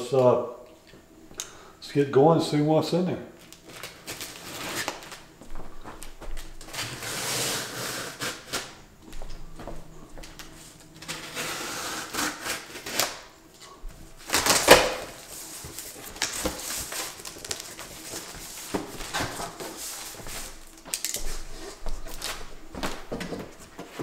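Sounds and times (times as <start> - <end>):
cardboard box being opened: 14.2 - 20.6.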